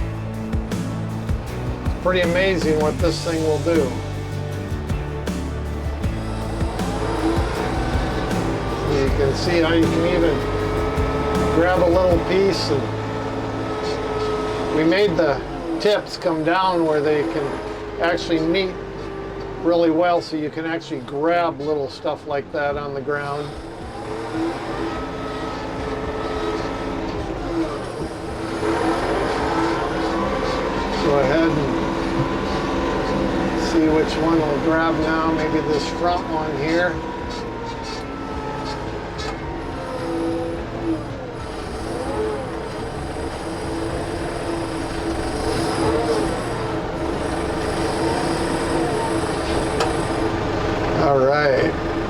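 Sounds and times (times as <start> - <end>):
hydraulics whining: 0.0 - 52.0
tractor engine running: 0.0 - 52.0.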